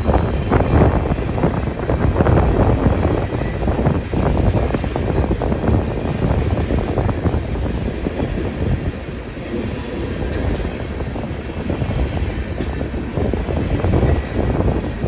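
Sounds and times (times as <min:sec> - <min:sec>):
train cars knocking and clanking: 0:00.0 - 0:15.0
train wheels rumbling on rail: 0:00.0 - 0:15.0.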